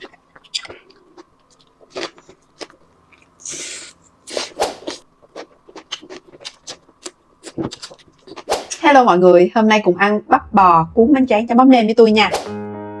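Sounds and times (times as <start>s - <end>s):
wet eating clicks and smacks: 0.0s - 3.4s, 4.8s - 8.5s.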